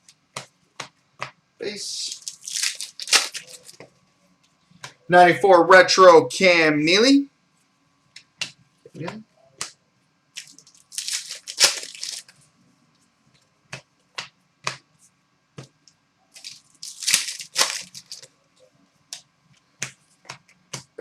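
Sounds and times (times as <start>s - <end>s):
cards clicking and tapping: 0.3s - 1.4s, 13.7s - 14.8s, 19.1s - 21.0s
cards rustling and sliding: 1.6s - 3.8s, 10.4s - 12.4s, 16.4s - 18.3s.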